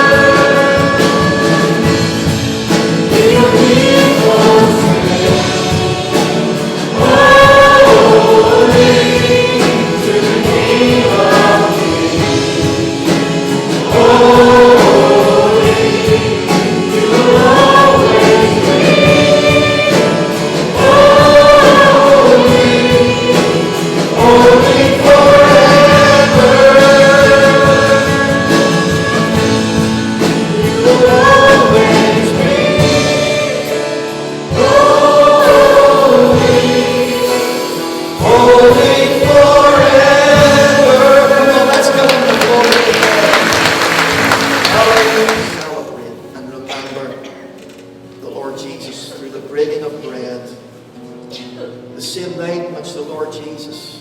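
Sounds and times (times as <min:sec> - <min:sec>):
congregation singing a hymn: 0:00.0 - 0:54.0
instrumental accompaniment: 0:00.0 - 0:54.0.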